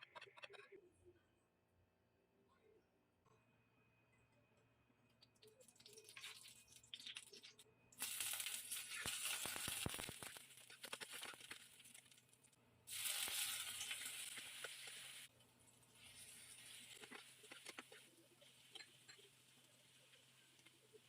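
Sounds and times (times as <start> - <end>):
food sizzling in hot oil: 5.9 - 12.2, 12.9 - 21.0.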